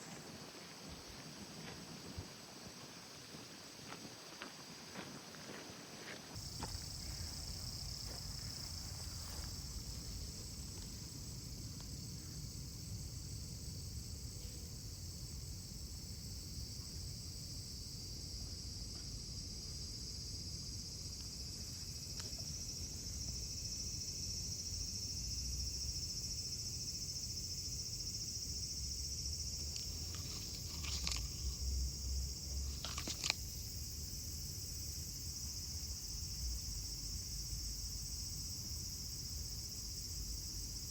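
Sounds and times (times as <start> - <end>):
insects shrilling: 29.4 - 33.8.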